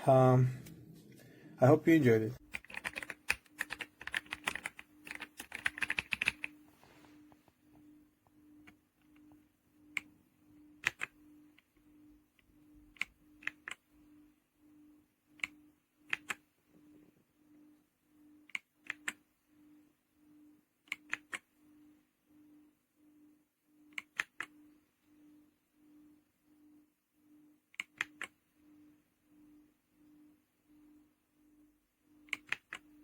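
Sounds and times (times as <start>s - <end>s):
faint low pulsing hum: 0.0s - 33.0s
mechanical keyboard keys clacking: 2.4s - 6.5s, 32.3s - 32.8s.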